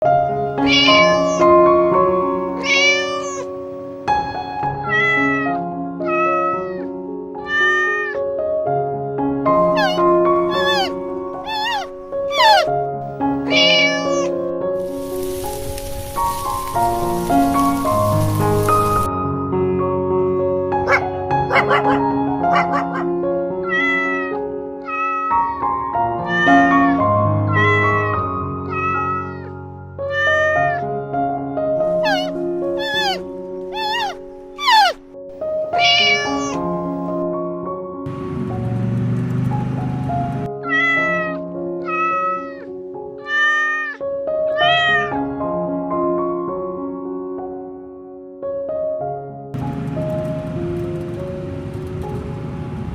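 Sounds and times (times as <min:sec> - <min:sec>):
soft background music: 0:00.0 - 0:52.9
cat meowing: 0:00.6 - 0:01.7, 0:02.6 - 0:03.6, 0:04.7 - 0:08.2, 0:09.7 - 0:12.7, 0:13.4 - 0:15.2, 0:20.9 - 0:25.6, 0:26.2 - 0:30.9, 0:31.8 - 0:35.0, 0:35.7 - 0:36.7, 0:40.6 - 0:45.2.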